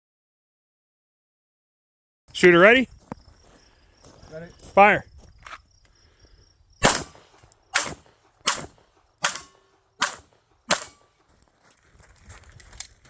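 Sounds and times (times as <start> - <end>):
pistol shots: 6.8 - 11.2.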